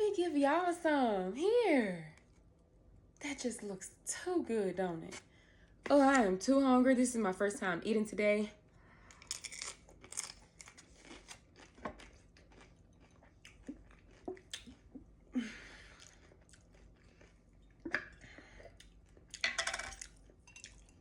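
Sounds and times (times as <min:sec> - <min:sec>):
person chewing and crunching: 0:09.1 - 0:21.0.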